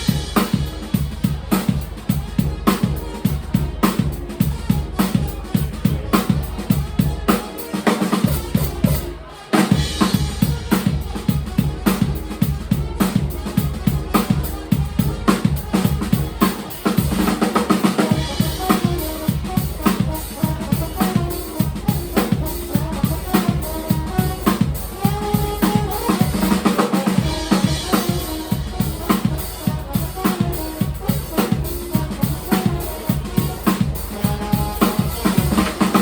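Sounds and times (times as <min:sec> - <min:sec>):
bass guitar: 0:00.0 - 0:36.0
drum kit beat: 0:00.0 - 0:36.0
live band playing uptempo: 0:00.0 - 0:36.0.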